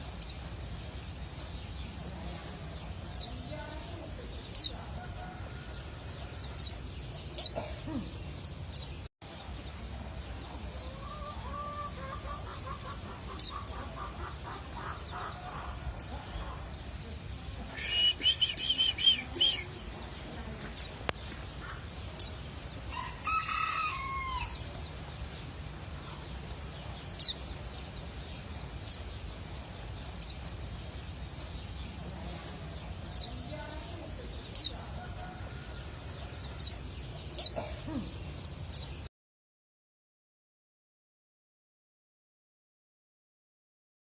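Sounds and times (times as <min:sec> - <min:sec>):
bird chirping: 0:06.0 - 0:39.1
chickens clucking: 0:10.7 - 0:16.8.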